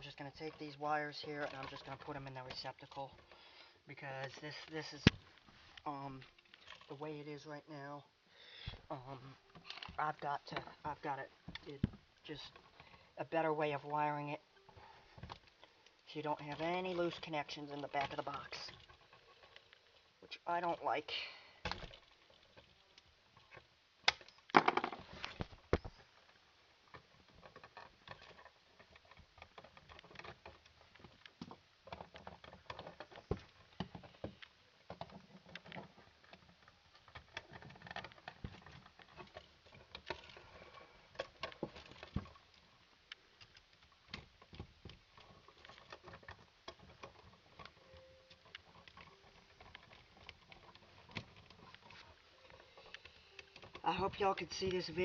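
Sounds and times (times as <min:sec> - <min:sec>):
clicks and taps of wiring: 0:21.6 - 0:26.1.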